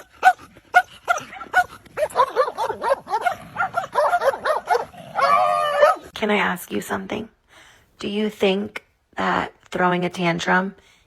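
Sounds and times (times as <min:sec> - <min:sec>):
dog barking and yipping: 0:00.0 - 0:06.1.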